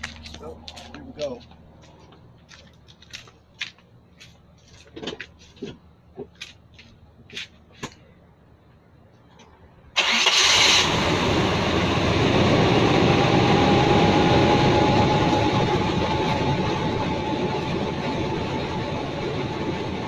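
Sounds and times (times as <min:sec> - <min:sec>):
car engine cranking and running: 0:10.0 - 0:20.0.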